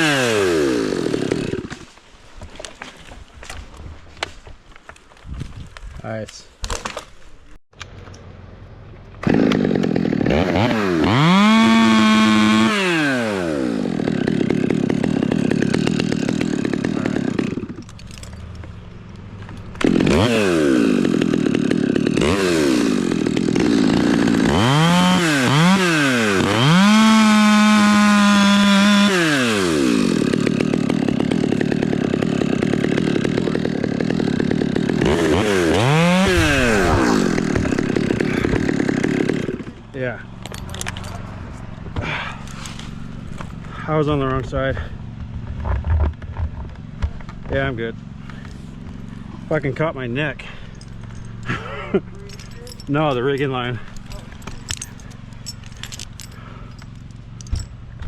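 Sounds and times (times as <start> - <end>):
chainsaw revving: 0.0 - 1.9, 9.2 - 17.9, 19.7 - 39.9, 47.6 - 57.6.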